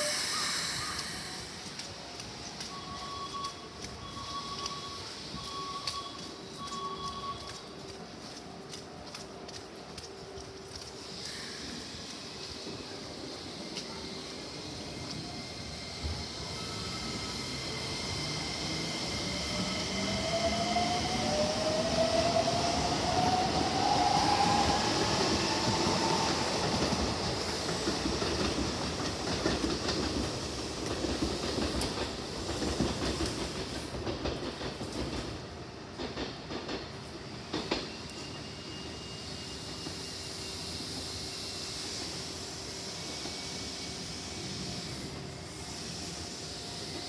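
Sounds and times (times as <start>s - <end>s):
train wheels clattering over rails: 3.8s - 38.5s.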